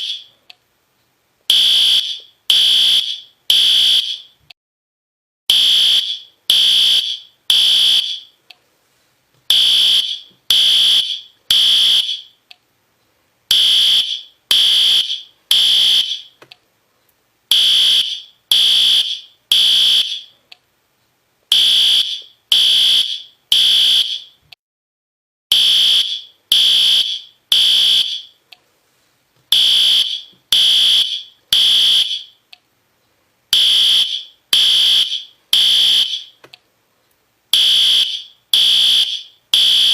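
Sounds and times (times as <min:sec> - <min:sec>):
fire alarm horn blasts: 0:01.5 - 0:04.3, 0:05.5 - 0:08.4, 0:09.5 - 0:12.4, 0:13.5 - 0:16.4, 0:17.5 - 0:20.3, 0:21.5 - 0:24.4, 0:25.5 - 0:28.4, 0:29.5 - 0:32.4, 0:33.6 - 0:36.4, 0:37.6 - 0:39.9.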